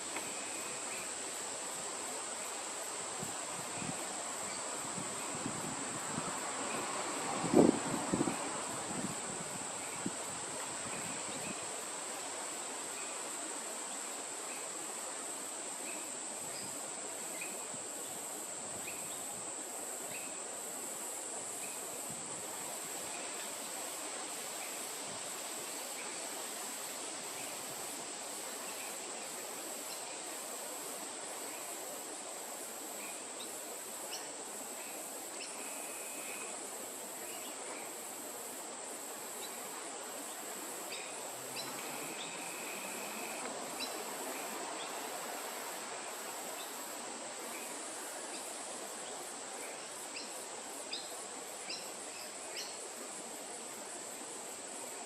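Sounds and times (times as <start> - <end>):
soft outdoor hiss: 0.0 - 55.0
high-pitched insect drone: 40.8 - 45.1.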